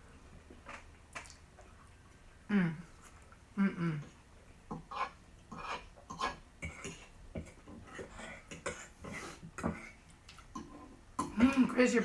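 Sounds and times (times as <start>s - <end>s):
chewing: 0.5s - 3.4s.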